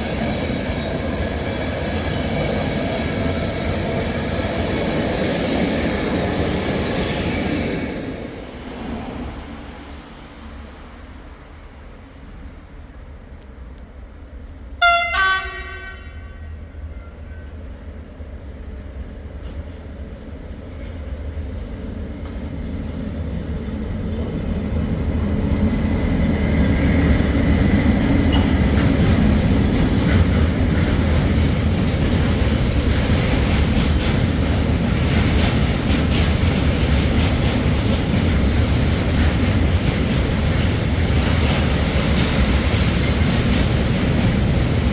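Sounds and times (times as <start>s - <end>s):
train rumbling on rails: 0.0s - 44.9s
train horn blast: 14.8s - 17.4s.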